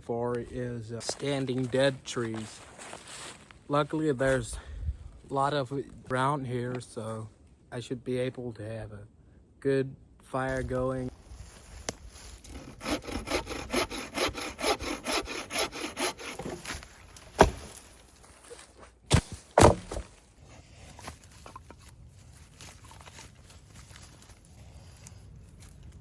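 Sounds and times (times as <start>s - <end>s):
hand saw cutting wood: 12.2s - 17.8s
sharp cracks of wood: 15.9s - 18.3s, 19.0s - 20.3s.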